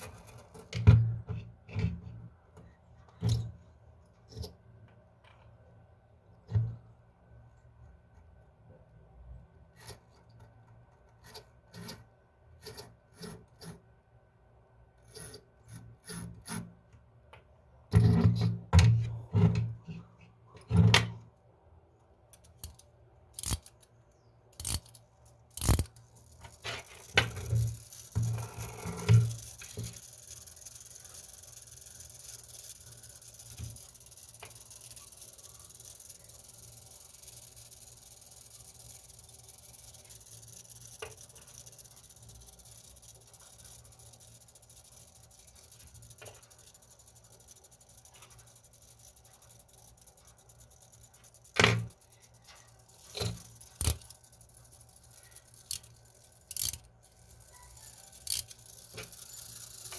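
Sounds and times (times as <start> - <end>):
small metal tools clicking: 22.3 - 59.9.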